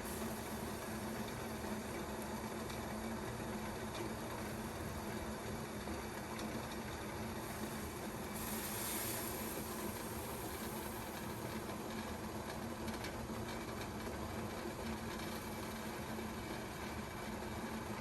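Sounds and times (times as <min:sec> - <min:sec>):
high hiss of steam: 0:00.0 - 0:02.2, 0:07.4 - 0:11.8
kettle boiling: 0:00.0 - 0:18.0.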